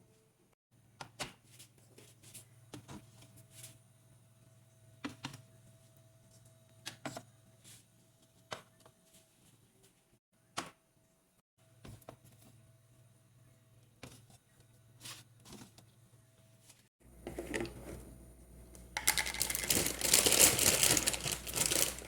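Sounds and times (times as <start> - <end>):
kitchen items clicking and knocking: 18.8 - 22.0.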